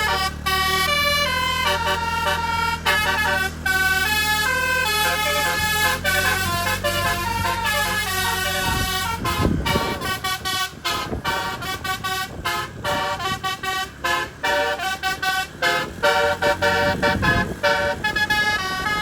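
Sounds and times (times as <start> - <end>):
bus horn playing a melody: 0.0 - 19.0.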